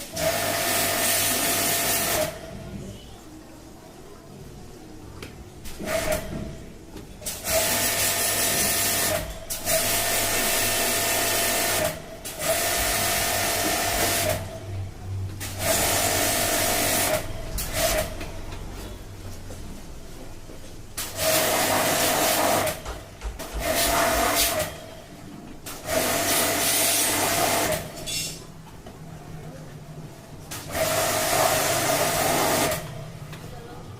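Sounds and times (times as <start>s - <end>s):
pump motor: 0.0s - 2.4s, 7.3s - 14.6s, 15.4s - 18.2s, 21.0s - 24.8s, 30.5s - 32.9s.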